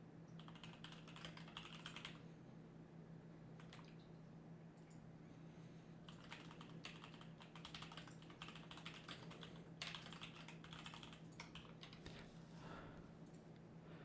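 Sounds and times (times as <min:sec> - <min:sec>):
low electrical hum: 0:00.0 - 0:14.0
computer keyboard typing: 0:00.4 - 0:02.2, 0:03.6 - 0:03.9, 0:06.1 - 0:12.1.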